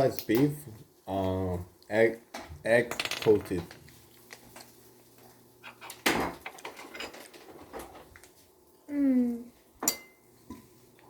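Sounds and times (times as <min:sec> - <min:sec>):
person humming: 0:08.9 - 0:09.5.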